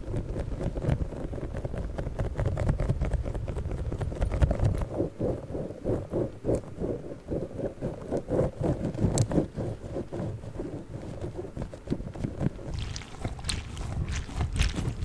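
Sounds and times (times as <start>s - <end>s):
squishy ball squishing: 12.5s - 15.0s.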